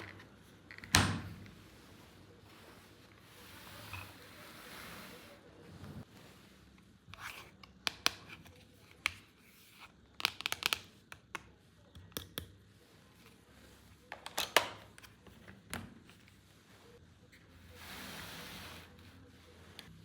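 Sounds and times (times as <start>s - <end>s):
plastic clicks: 10.2s - 11.4s.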